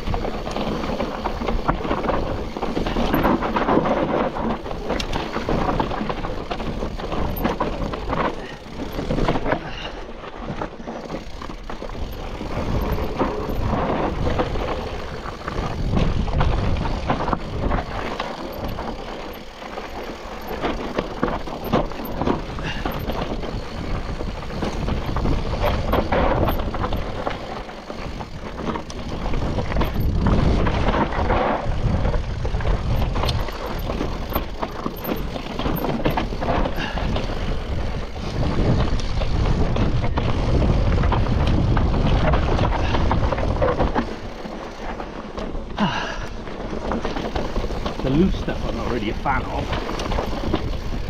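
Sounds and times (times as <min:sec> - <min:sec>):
bike knocking and rattling: 0:00.0 - 0:51.0
bike tyres rumbling over gravel: 0:00.0 - 0:51.0
wind on microphone: 0:11.9 - 0:19.4, 0:20.0 - 0:44.5.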